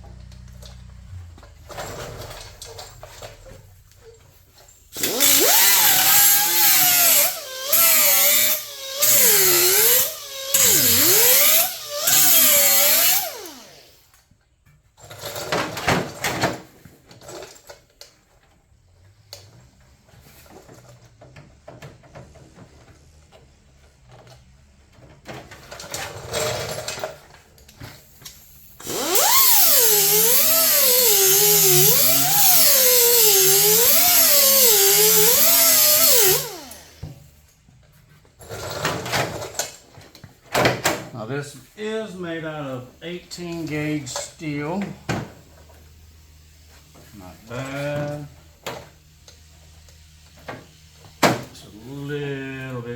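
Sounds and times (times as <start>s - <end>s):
power grinder grinding steel: 5.0s - 14.0s, 28.7s - 37.0s.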